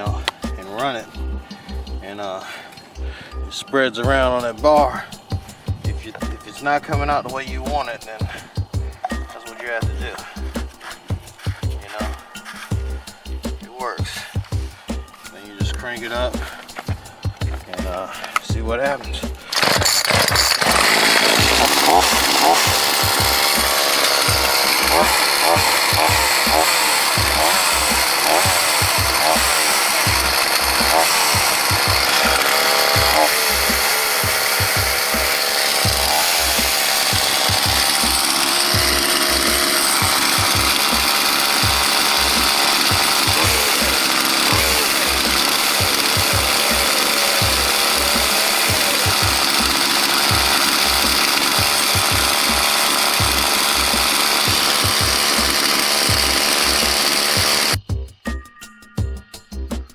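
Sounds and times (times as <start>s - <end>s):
chainsaw running: 0.0s - 57.8s.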